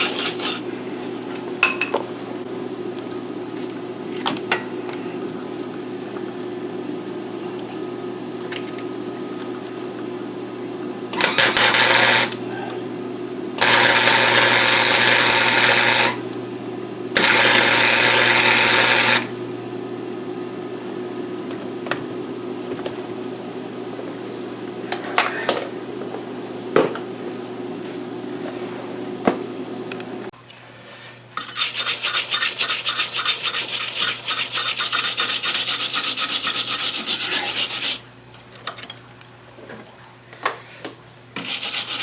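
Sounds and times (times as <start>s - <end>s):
steady hum: 30.7s - 38.1s.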